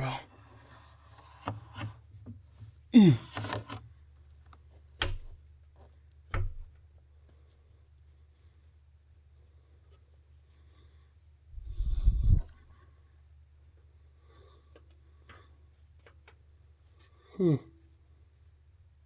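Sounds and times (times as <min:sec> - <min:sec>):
steady low hum: 0:04.0 - 0:19.0.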